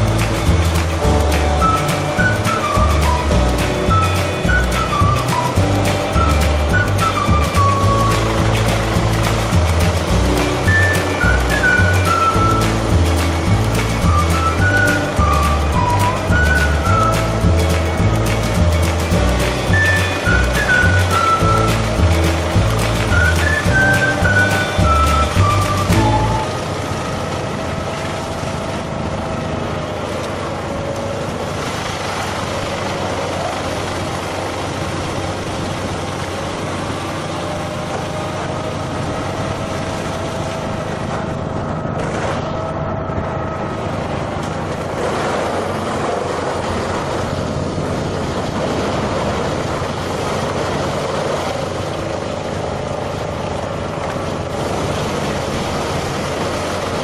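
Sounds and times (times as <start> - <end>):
heavy machine engine running: 0.0 - 57.0
faint wavering whine: 37.3 - 44.7.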